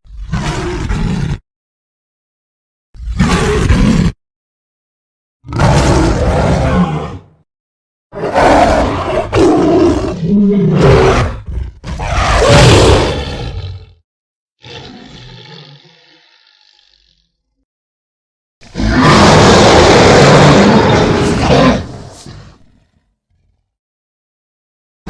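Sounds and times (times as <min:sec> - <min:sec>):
monster roaring: 0:03.2 - 0:04.2, 0:05.5 - 0:07.4, 0:08.2 - 0:14.0, 0:14.6 - 0:16.2, 0:18.6 - 0:22.6.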